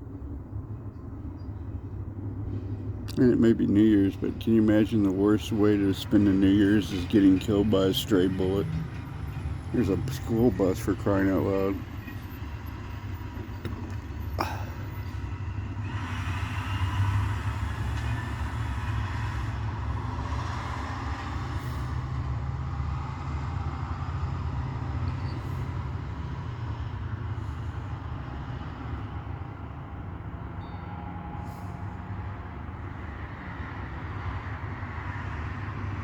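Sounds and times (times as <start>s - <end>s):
bus driving past: 0.0s - 36.0s.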